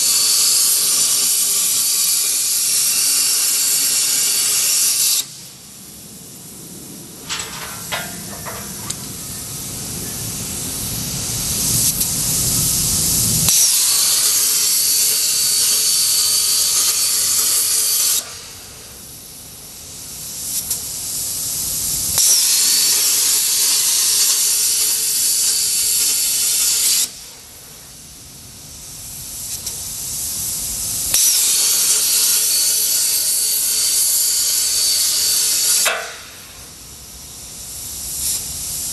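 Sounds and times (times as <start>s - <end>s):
plasma cutter arc hissing: 0.0s - 38.9s.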